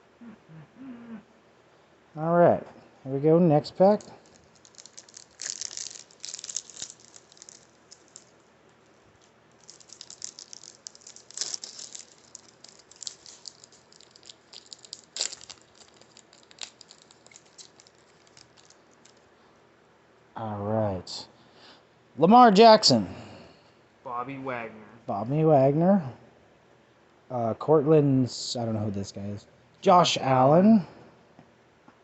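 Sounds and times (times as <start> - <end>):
cards being handled: 3.8 - 8.4, 9.6 - 19.3
foil wrapper crinkling and tearing: 3.9 - 8.4, 9.2 - 19.3.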